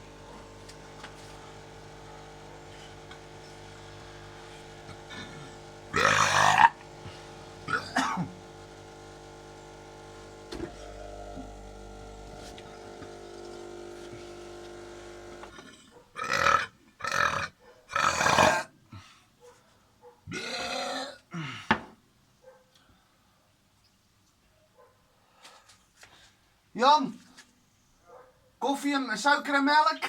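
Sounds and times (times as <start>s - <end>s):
person burping loudly: 4.9s - 8.5s, 16.2s - 18.7s, 20.3s - 21.8s.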